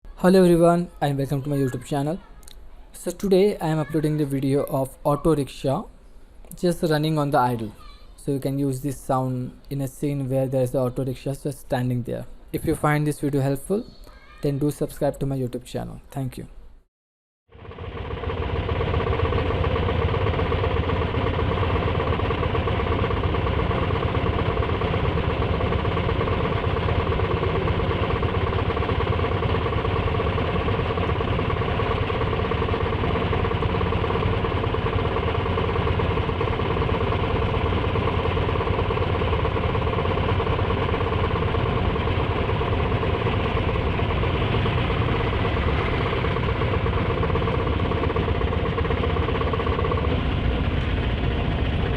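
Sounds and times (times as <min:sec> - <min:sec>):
small engine idling: 0:17.5 - 0:51.9.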